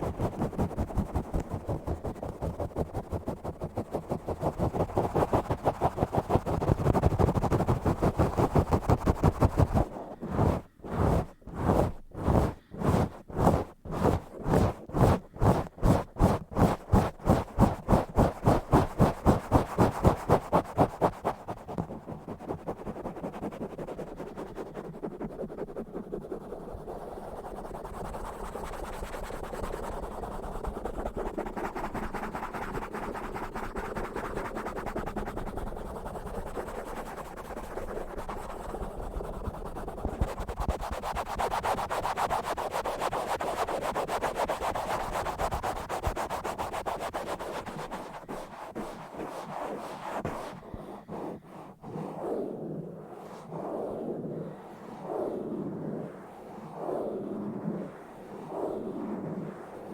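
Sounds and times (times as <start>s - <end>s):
scratching on a microphone: 0.0s - 54.0s.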